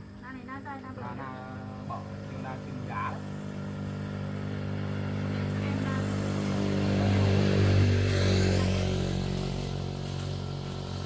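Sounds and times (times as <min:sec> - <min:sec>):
motorbike engine running: 0:00.0 - 0:11.0.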